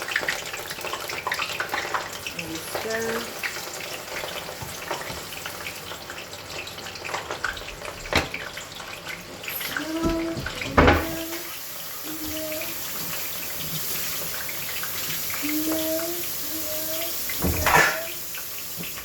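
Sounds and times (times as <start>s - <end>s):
onion sizzling in hot oil: 0.0s - 19.0s
knocks on cooking pot: 10.0s - 11.3s.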